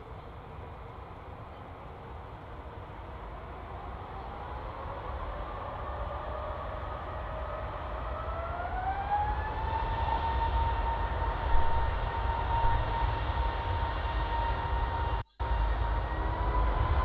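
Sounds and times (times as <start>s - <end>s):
jet engine whine rising: 2.8s - 17.0s
low engine rumble: 10.1s - 17.0s.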